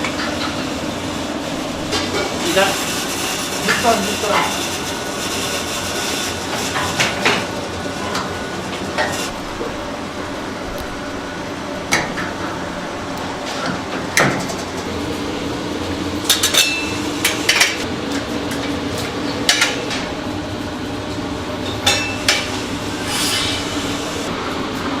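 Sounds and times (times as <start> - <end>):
steady background noise: 0.0 - 25.0
mechanical rumble with low hum: 9.3 - 24.7
metal utensils and pans clinking: 16.3 - 17.8
brief hiss: 23.0 - 24.0.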